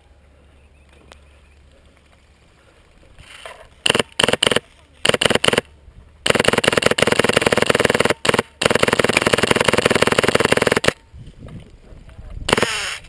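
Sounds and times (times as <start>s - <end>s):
airsoft rifle firing bursts: 3.8s - 11.0s, 12.5s - 13.0s.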